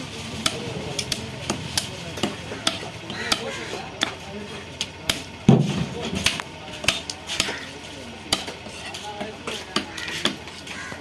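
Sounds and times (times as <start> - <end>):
knife scraping fish: 6.2 - 10.9.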